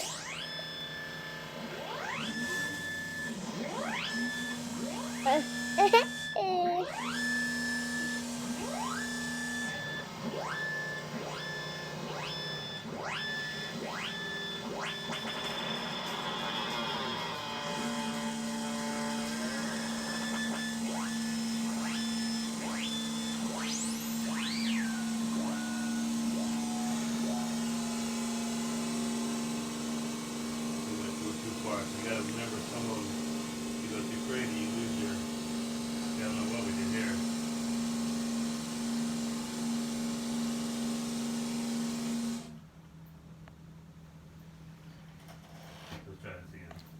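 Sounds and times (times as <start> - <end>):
steady buzzing drone: 0.0 - 38.2
synthetic rising tones: 8.6 - 30.0.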